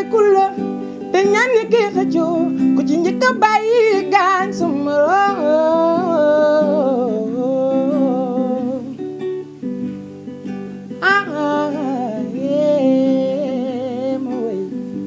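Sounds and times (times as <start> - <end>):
person singing wavering notes: 0.0 - 9.2, 10.7 - 15.0
plucked acoustic guitar: 0.0 - 15.0.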